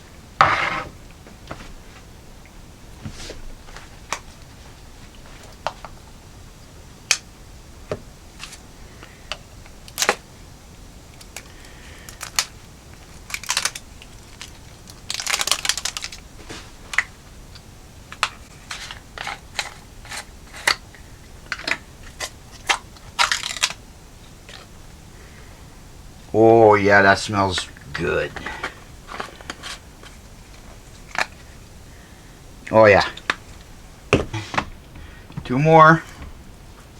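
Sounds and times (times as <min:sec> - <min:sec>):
packaging crinkling: 0:11.2 - 0:17.1, 0:21.5 - 0:23.8.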